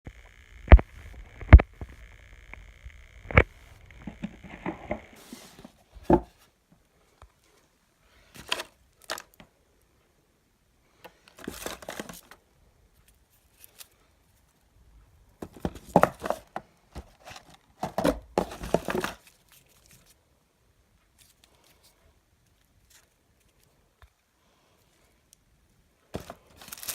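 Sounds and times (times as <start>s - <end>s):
packaging tearing and crinkling: 11.4s - 12.4s, 17.2s - 20.2s, 26.2s - 26.9s.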